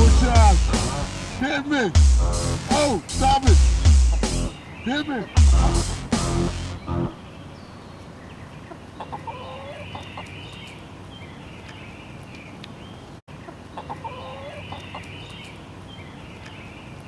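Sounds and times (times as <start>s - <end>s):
chickens clucking: 3.8s - 5.4s, 8.6s - 10.4s, 13.4s - 15.2s.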